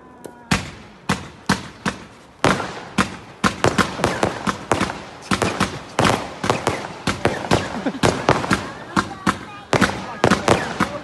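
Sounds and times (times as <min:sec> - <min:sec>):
fireworks bangs: 0:00.4 - 0:11.0.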